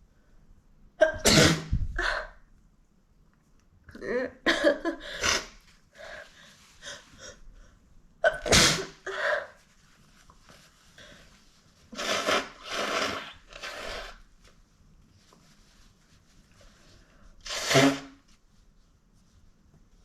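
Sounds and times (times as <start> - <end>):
woman sneezing: 8.3 - 9.6.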